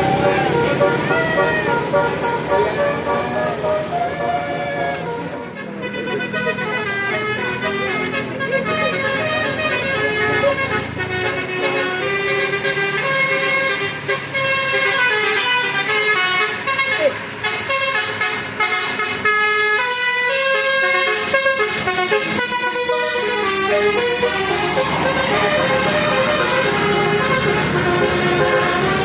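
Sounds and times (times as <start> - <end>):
musical bus air horns: 0.0 - 29.0.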